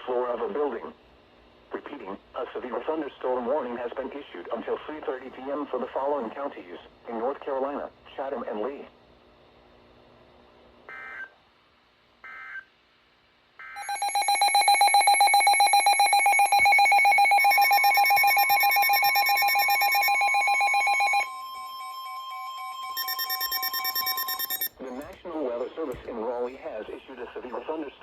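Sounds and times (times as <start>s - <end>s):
steady warning alarm tone: 13.6s - 25.1s
rapidly pulsing alert alarm: 13.7s - 24.8s
digital data tone bursts: 13.8s - 24.8s.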